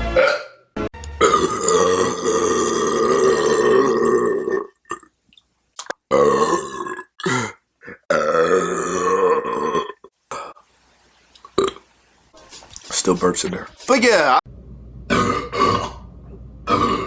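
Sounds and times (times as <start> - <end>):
man burping: 0.2 - 0.6, 1.2 - 5.1, 6.1 - 10.6, 15.1 - 16.0, 16.7 - 17.0.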